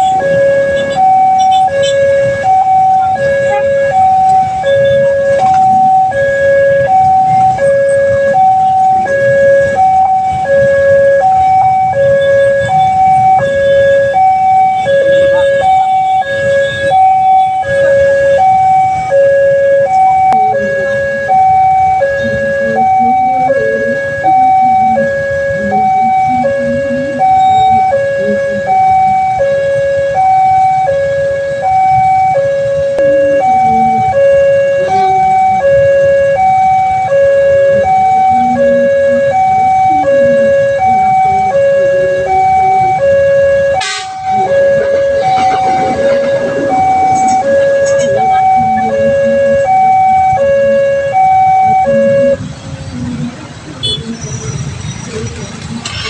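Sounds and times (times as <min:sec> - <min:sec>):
level crossing two-tone alarm: 0:00.0 - 0:52.4.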